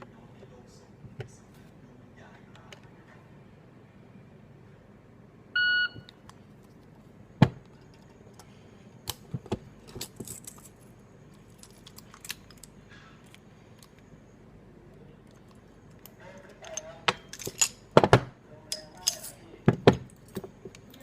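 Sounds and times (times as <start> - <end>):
electronic timer beep: 5.6 - 6.1.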